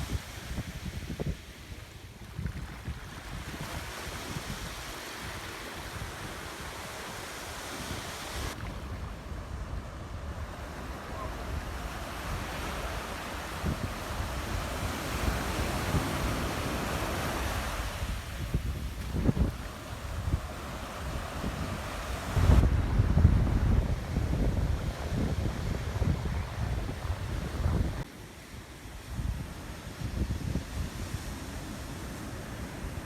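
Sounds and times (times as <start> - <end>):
wind buffeting microphone: 0.0 - 28.1
surf breaking on beach: 0.0 - 33.0.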